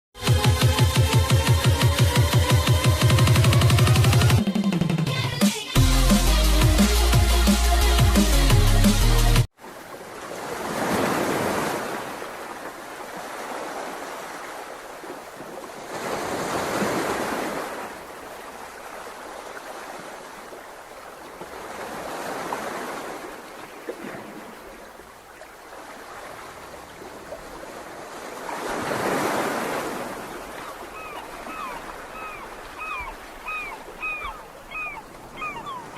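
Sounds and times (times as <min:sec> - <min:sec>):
sea waves washing onto shore: 0:09.6 - 0:35.9.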